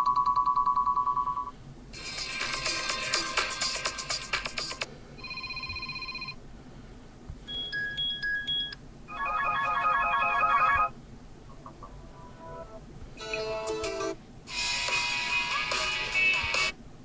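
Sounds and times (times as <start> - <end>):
phone ringtones: 5.2 - 6.4, 7.5 - 10.9.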